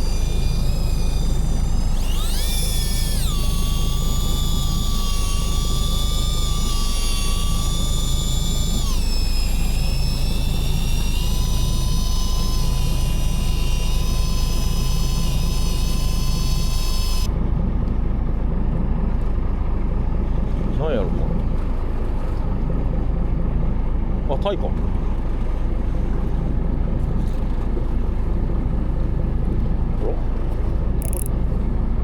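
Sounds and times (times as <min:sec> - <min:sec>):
high-pitched whine: 0:00.0 - 0:17.4
boat engine low rumble: 0:00.0 - 0:32.0.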